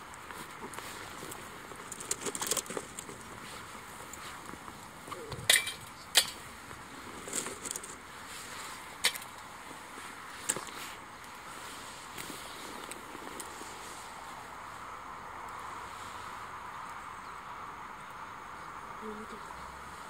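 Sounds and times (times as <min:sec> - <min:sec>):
pine cones cracking in fire: 0:00.0 - 0:18.8
faint steady fire hiss: 0:00.0 - 0:20.0.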